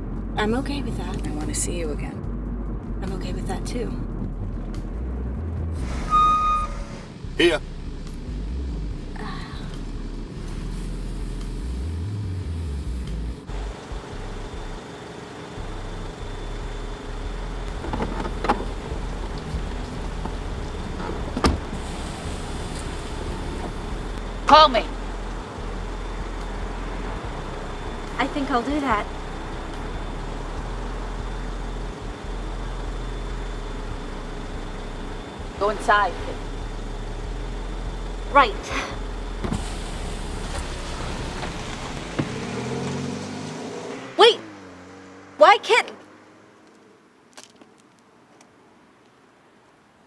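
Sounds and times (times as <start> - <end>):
car engine idling: 0.0 - 43.1
faint high steady tone: 5.9 - 7.0
steady hiss: 17.7 - 24.2.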